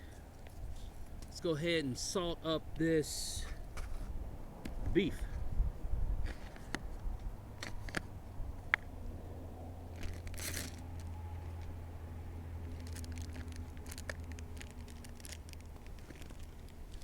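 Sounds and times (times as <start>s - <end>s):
steady low hum: 0.0s - 17.0s
plastic packaging crinkling: 10.0s - 11.7s, 12.6s - 17.0s.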